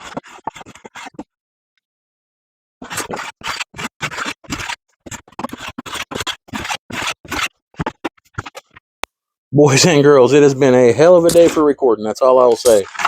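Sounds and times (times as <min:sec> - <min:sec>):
hand saw rasping through wood: 0:02.8 - 0:07.5, 0:11.0 - 0:11.7, 0:12.4 - 0:13.0.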